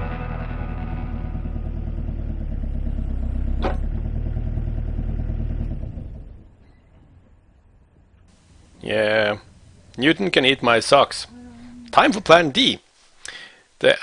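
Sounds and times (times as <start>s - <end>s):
excavator diesel engine under load: 0.0s - 8.7s.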